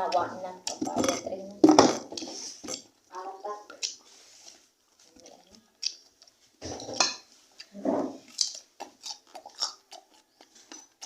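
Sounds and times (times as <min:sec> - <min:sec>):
cutlery and dishes clinking: 0:06.6 - 0:07.3.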